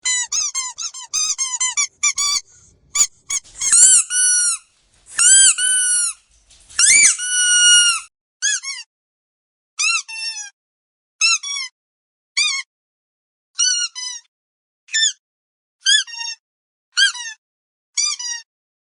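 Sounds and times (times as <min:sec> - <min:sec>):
squeaky dog toy squeaking: 0:00.0 - 0:06.2, 0:06.8 - 0:08.9, 0:09.8 - 0:10.5, 0:11.2 - 0:11.7, 0:12.4 - 0:12.7, 0:13.6 - 0:14.3, 0:14.9 - 0:15.2, 0:15.8 - 0:16.4, 0:17.0 - 0:17.4, 0:18.0 - 0:18.5.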